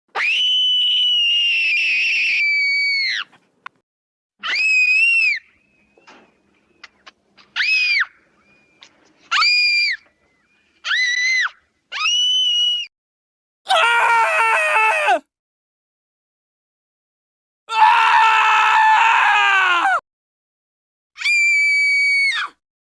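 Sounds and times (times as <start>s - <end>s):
high-pitched screams: 0.1s - 3.3s, 4.4s - 5.5s, 10.8s - 12.9s.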